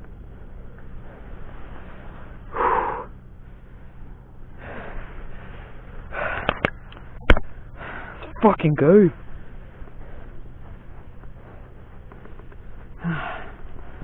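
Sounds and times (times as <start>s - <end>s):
steady low hum: 0.0s - 14.0s
man breathing hard: 2.1s - 3.3s, 4.4s - 6.7s, 7.6s - 8.4s, 12.8s - 14.0s.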